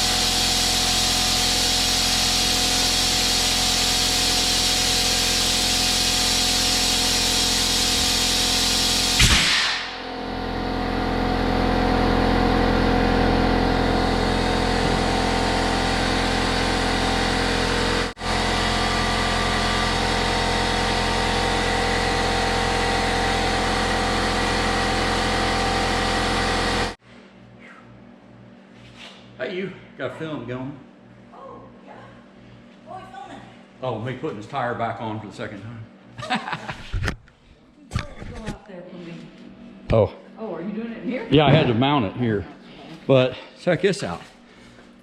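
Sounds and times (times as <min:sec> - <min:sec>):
air compressor motor running: 0:00.0 - 0:31.4, 0:39.1 - 0:45.0
short loud air burst: 0:00.8 - 0:10.1.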